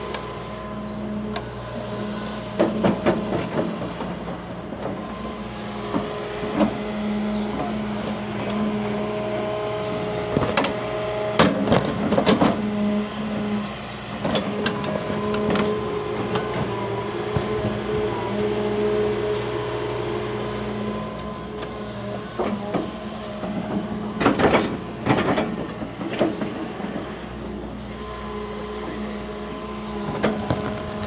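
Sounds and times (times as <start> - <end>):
excavator engine running: 0.0 - 31.0.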